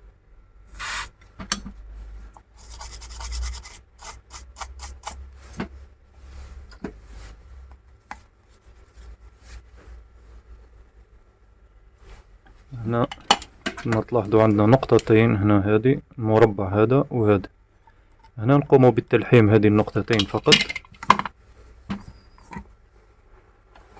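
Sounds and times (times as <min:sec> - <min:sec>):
scraping on circuit board: 0:02.5 - 0:05.6.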